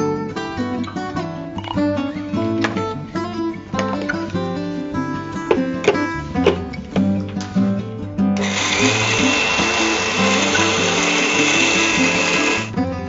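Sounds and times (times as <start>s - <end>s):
guitar music: 0.0s - 13.0s
mixer grinder motor whirring: 8.4s - 12.8s.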